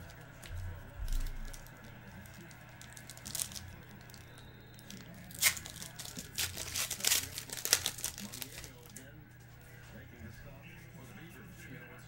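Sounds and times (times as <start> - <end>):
wrapper tearing and crinkling: 0.4 - 9.0.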